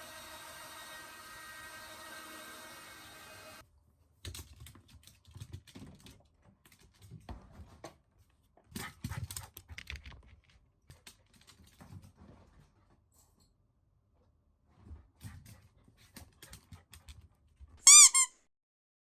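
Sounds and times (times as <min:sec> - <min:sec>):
dog moving with clicks and thumps: 0:04.2 - 0:13.6.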